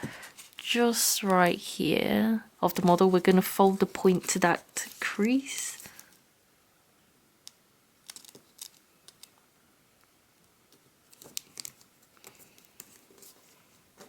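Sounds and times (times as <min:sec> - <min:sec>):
paper being folded and creased: 0:11.1 - 0:13.8.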